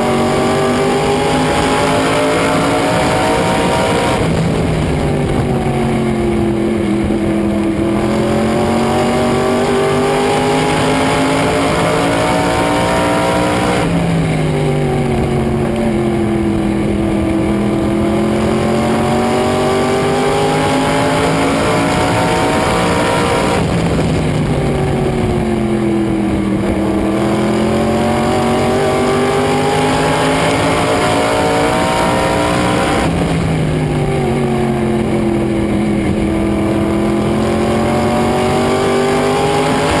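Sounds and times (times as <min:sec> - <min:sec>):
race car engine revving: 0:00.0 - 0:40.0.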